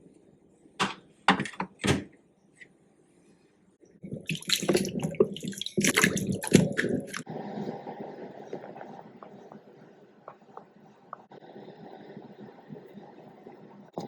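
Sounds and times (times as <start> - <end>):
tap water running into sink: 4.1 - 7.2.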